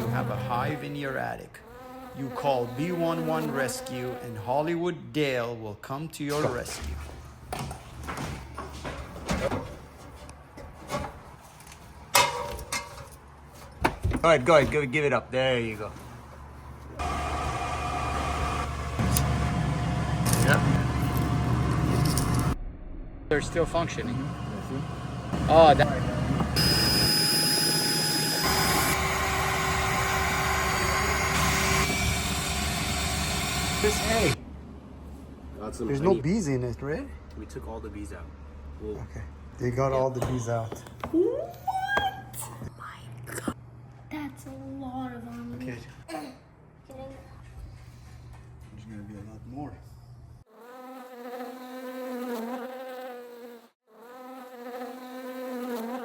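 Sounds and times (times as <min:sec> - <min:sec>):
bee buzzing: 0:00.0 - 0:04.6, 0:23.8 - 0:34.4, 0:50.5 - 0:56.0
machine whirring with high whine: 0:23.3 - 0:34.4.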